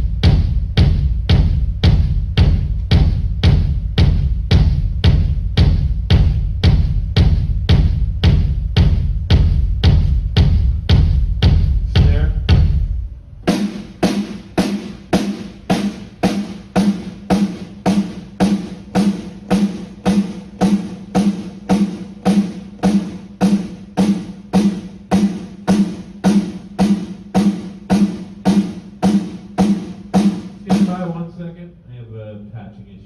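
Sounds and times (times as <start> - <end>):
snare drum hits: 13.5 - 31.2.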